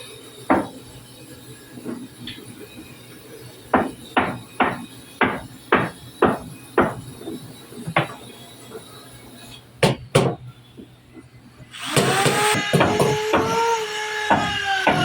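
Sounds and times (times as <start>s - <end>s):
hammer blows on wood: 12.0s - 15.0s.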